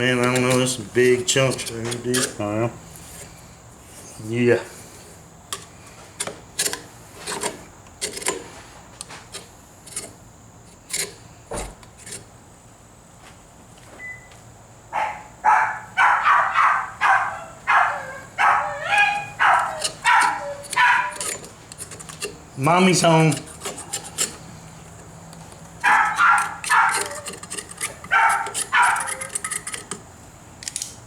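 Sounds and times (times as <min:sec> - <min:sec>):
tool scrapes and clicks: 0:00.2 - 0:04.2, 0:05.5 - 0:11.2, 0:11.8 - 0:12.3, 0:19.1 - 0:30.9
dog barking: 0:14.9 - 0:21.3, 0:25.8 - 0:27.3, 0:28.1 - 0:29.3.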